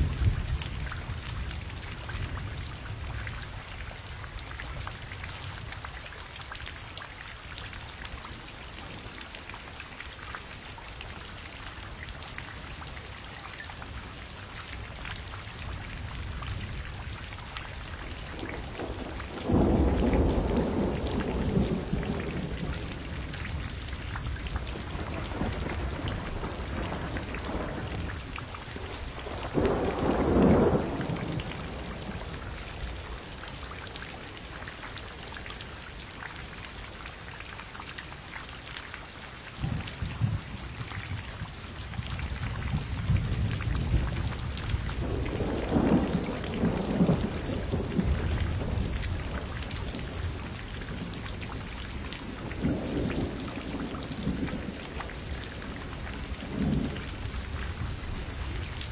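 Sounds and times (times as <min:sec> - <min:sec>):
steady rain falling: 0:00.0 - 0:58.9
thunder rumbling: 0:18.3 - 0:33.3, 0:39.6 - 0:58.9.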